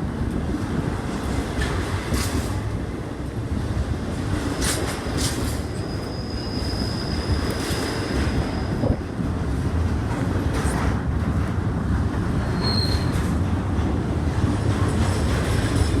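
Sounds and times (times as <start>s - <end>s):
train rumbling on rails: 0.0s - 16.0s
high-pitched wheel squeal: 5.6s - 9.0s, 12.4s - 13.3s.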